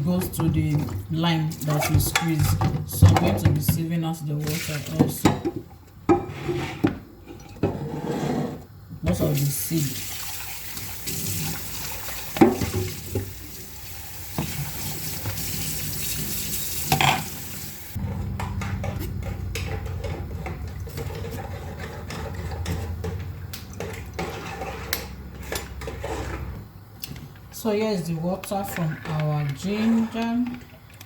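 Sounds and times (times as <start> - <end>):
juice running through a sieve: 9.3 - 18.4
low hum: 18.0 - 21.2.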